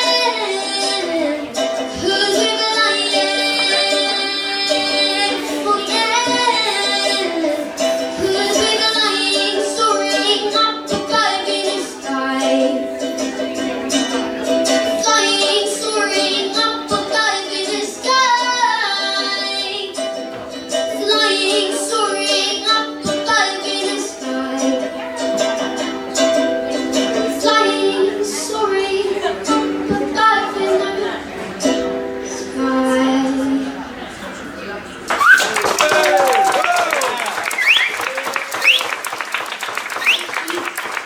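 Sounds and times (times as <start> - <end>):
woman singing: 0.0 - 14.0, 14.6 - 26.0, 26.7 - 33.8
plucked string instrument: 0.0 - 34.6.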